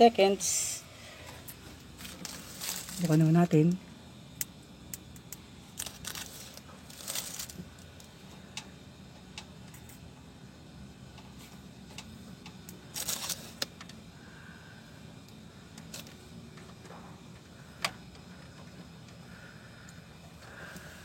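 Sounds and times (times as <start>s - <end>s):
faint low hum: 0.0s - 21.0s
rustling and scraping: 1.3s - 3.2s.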